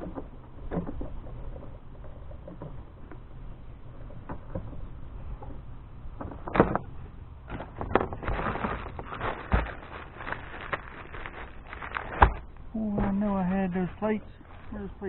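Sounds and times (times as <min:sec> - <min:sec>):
rustling and clatter: 0:06.2 - 0:15.0.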